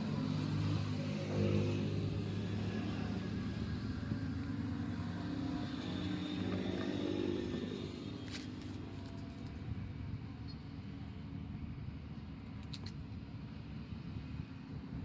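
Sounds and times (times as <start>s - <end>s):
vehicle engine running: 0.0s - 9.8s.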